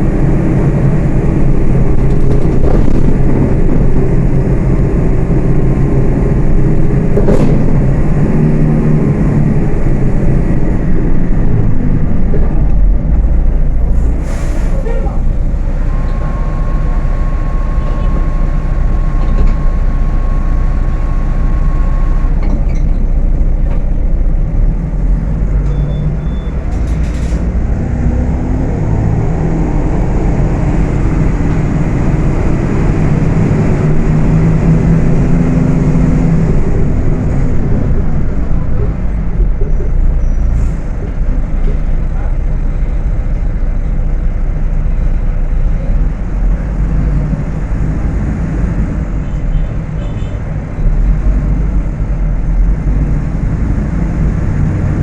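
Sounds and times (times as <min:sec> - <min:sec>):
bus engine running: 0:00.0 - 0:55.0
steady high beep: 0:15.9 - 0:22.3.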